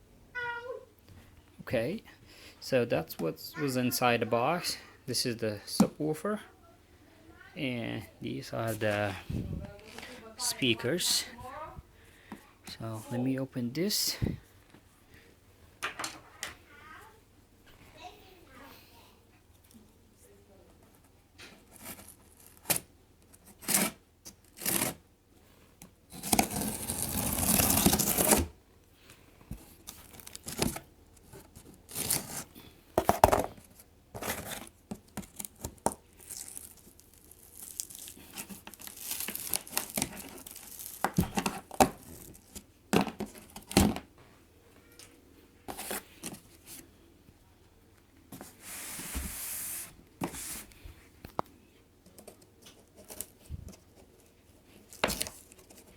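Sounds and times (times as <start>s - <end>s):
packaging tearing: 26.2s - 28.5s, 35.3s - 42.4s
packaging crinkling and rustling: 29.8s - 32.5s, 33.1s - 44.0s.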